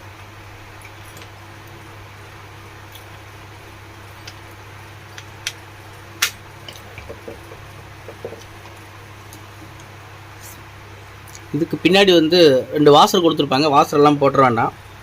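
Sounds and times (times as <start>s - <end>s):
steady low hum: 0.0s - 15.0s
light taps and knocks: 7.0s - 8.5s.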